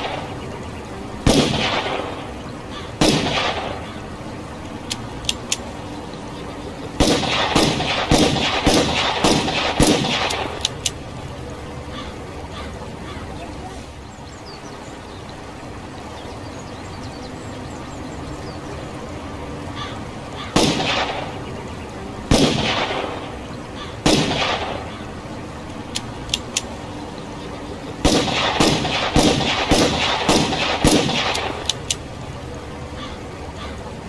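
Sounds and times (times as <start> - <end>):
revolver gunshots: 1.2 - 2.4, 3.0 - 4.0, 7.0 - 10.8, 20.5 - 21.4, 22.3 - 23.4, 24.0 - 25.0, 28.0 - 31.8.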